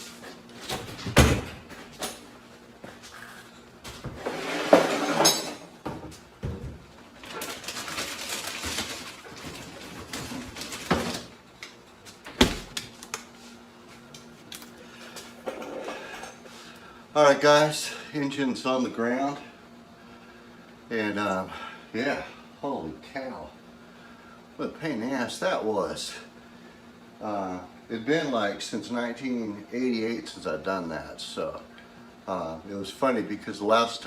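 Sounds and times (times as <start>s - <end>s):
rustling handling noise: 6.9s - 11.4s.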